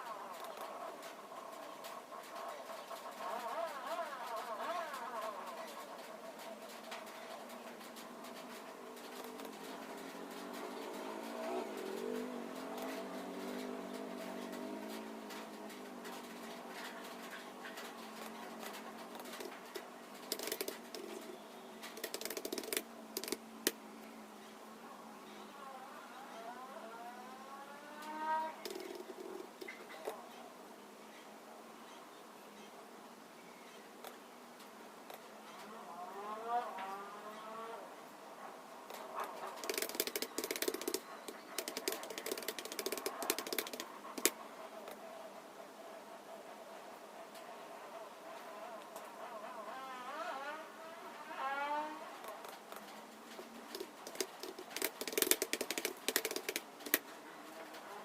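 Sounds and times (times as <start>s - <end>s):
computer keyboard typing: 18.0s - 21.3s, 21.9s - 23.8s, 39.2s - 44.4s, 53.7s - 57.1s.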